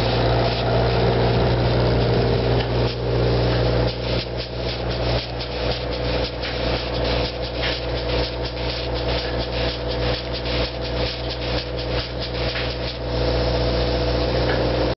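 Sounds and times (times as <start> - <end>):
engine running: 0.0 - 14.9
scraping noises: 1.7 - 13.0.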